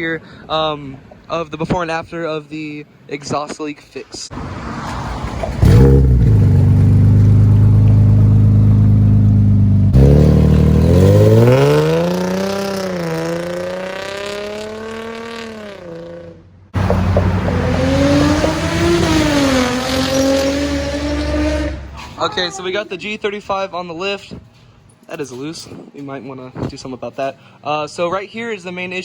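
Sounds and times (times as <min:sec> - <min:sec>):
car exhaust revving: 0:04.4 - 0:22.2.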